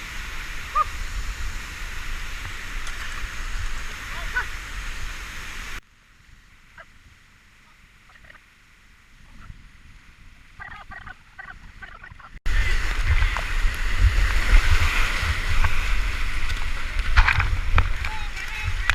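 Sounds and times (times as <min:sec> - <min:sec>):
whitewater rushing: 0:12.4 - 0:18.9.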